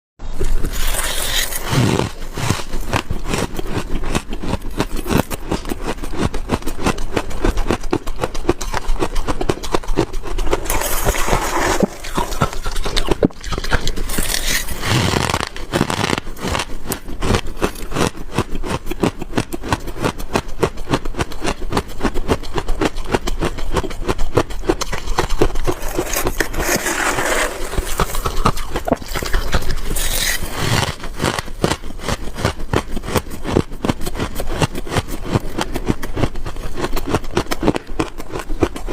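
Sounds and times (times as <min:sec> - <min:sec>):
chewing frost crunching: 0:00.4 - 0:38.9.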